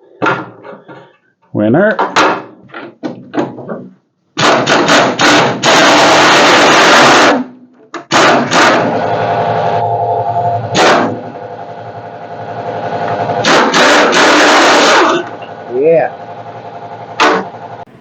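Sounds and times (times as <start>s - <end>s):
sharp tool impacts: 4.4s - 9.0s, 10.8s - 11.2s, 13.4s - 15.4s, 17.2s - 17.5s
power tool running: 8.2s - 18.0s.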